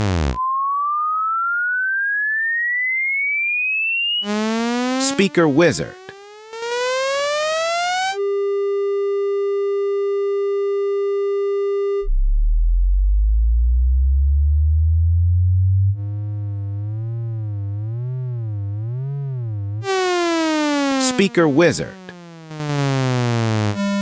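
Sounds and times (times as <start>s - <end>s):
steady buzzing tone: 0.0s - 0.4s, 4.2s - 5.1s
rising test tone: 4.2s - 5.1s.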